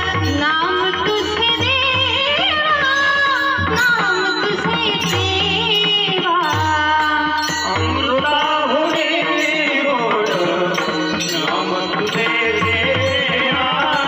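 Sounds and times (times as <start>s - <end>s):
drum accompaniment: 0.0s - 14.0s
woman singing devotional song: 0.0s - 14.0s.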